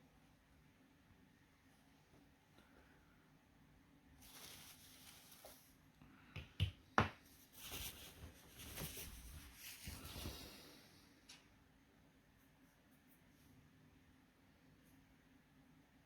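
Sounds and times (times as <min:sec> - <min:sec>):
scraping and rustling: 0:07.4 - 0:10.6.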